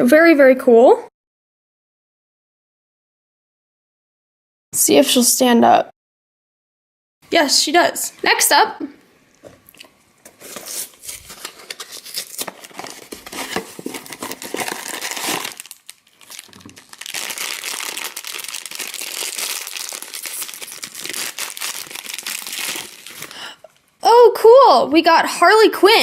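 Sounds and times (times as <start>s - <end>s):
foil bag crinkling and ripping: 10.3s - 23.8s
cardboard tearing: 10.4s - 23.4s.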